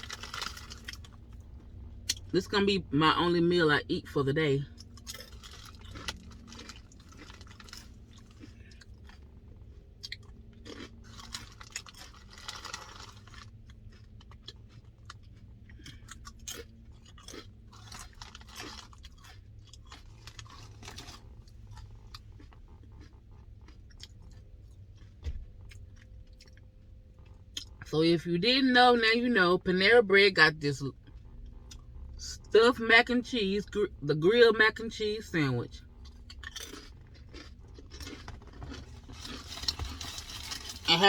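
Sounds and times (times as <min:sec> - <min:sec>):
person chewing and crunching food: 0:00.0 - 0:02.3, 0:04.6 - 0:27.9, 0:30.9 - 0:32.5, 0:35.7 - 0:41.0.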